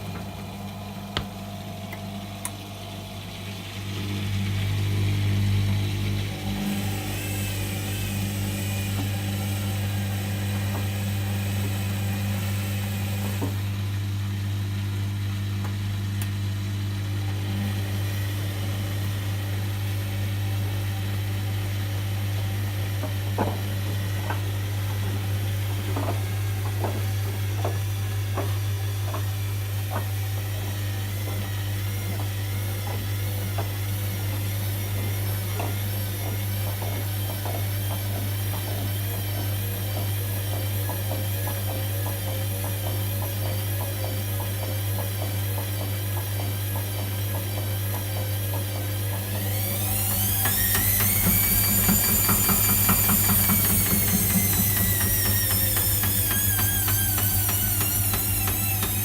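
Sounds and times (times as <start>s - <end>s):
washing machine humming: 0.0s - 59.0s.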